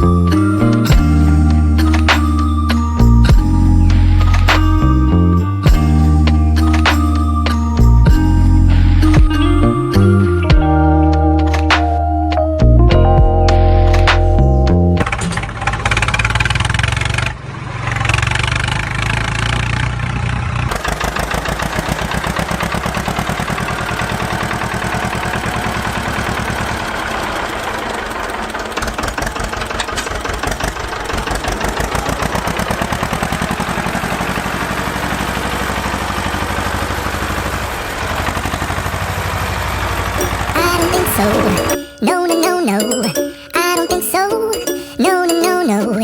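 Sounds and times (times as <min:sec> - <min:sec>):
diesel engine chugging: 0:15.0 - 0:41.8.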